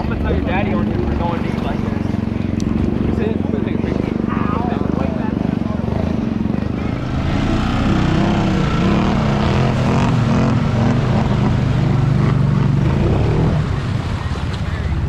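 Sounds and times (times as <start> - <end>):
atv engines revving: 0.0 - 15.0.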